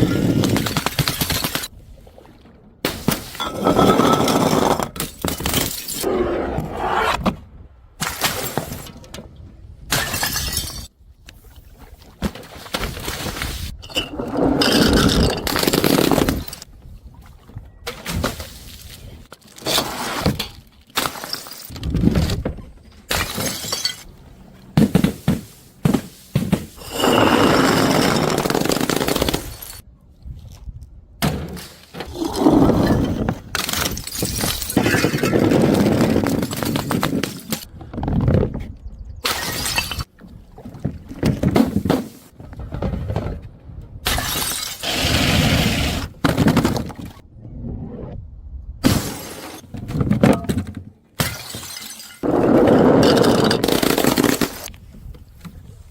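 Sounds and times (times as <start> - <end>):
glass shattering: 9.9 - 10.9, 23.1 - 24.1, 44.1 - 44.9, 51.2 - 52.2.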